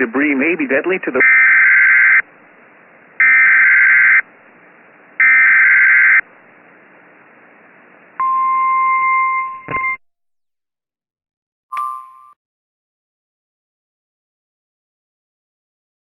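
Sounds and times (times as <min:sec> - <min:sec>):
single-pitched warning alarm tone: 0:01.2 - 0:02.2, 0:03.2 - 0:04.2, 0:05.2 - 0:06.2.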